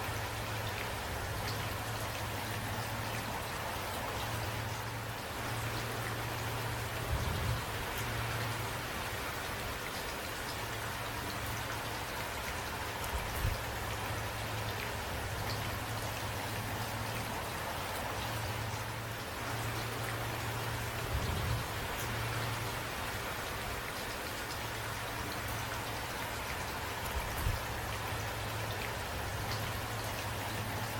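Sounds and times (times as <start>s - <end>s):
rain drops ticking on a surface: 0.0s - 30.9s.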